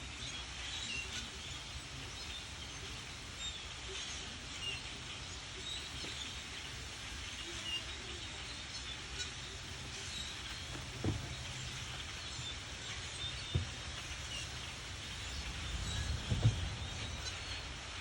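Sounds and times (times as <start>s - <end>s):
flock of birds chirping: 0.0s - 18.0s
low steady rumble: 0.1s - 18.0s.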